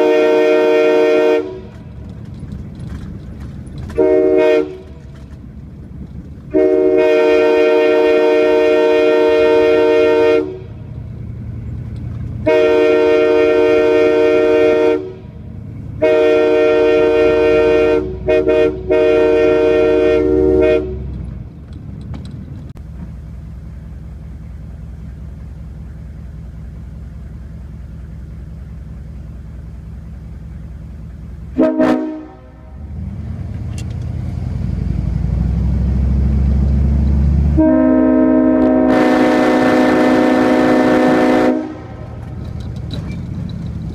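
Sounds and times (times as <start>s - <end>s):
locomotive air horn blasts: 0.0s - 2.0s, 3.8s - 5.2s, 6.5s - 10.9s, 12.4s - 21.2s, 31.5s - 32.8s, 37.5s - 42.2s
low engine rumble: 0.0s - 43.9s.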